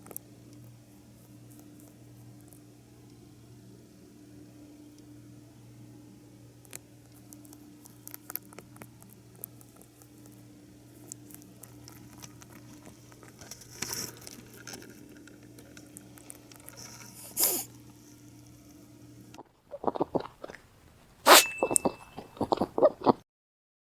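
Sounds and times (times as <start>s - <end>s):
low electrical hum: 0.0s - 22.8s
rabbit snoring: 16.7s - 18.1s.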